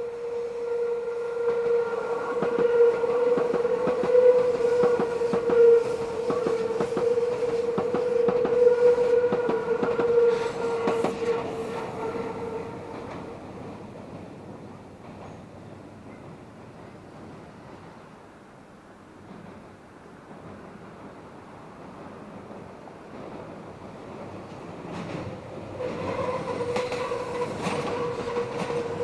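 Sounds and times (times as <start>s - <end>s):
train wheels squealing: 0.0s - 13.7s, 24.9s - 29.0s.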